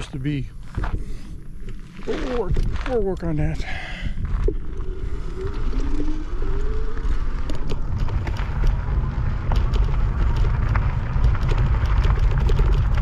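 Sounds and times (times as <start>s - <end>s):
gravel ticking under wheels: 0.0s - 13.0s
wind rumbling on microphone: 0.0s - 13.0s
tyre rumble on gravel: 7.1s - 13.0s.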